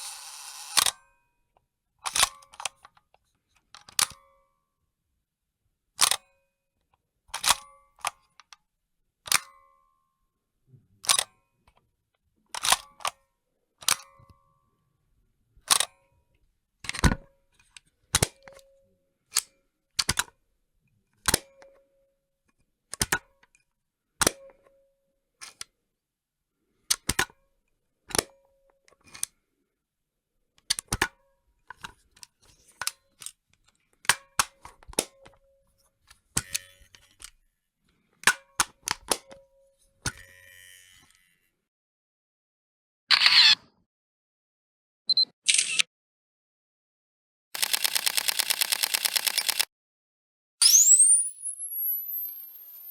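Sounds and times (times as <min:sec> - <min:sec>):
camera shutter clicks: 0:00.0 - 0:01.0, 0:45.5 - 0:45.9, 0:47.6 - 0:49.7, 0:50.6 - 0:52.9.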